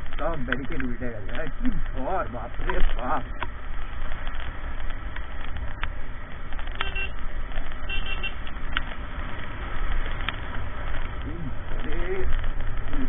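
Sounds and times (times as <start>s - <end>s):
motorcycle wind and road noise: 0.0s - 13.0s
vehicle horn toots: 6.8s - 7.2s, 7.8s - 8.4s.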